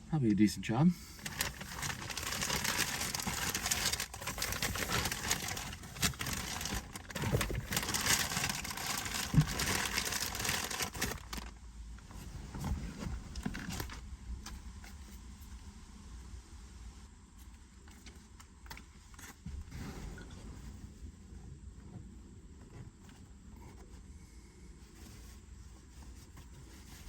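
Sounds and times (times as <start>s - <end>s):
plastic garbage bag rustling: 1.1s - 11.6s, 12.5s - 14.0s.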